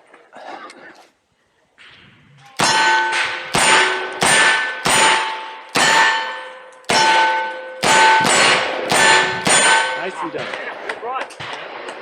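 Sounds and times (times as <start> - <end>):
bullets clanging on steel targets: 2.6 - 11.7.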